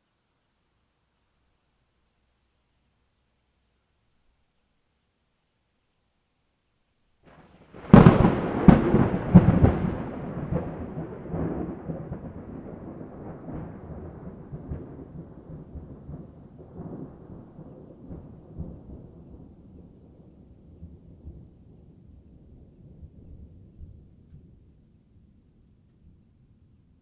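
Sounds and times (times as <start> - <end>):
thunder crack and rumble: 7.3 - 24.8.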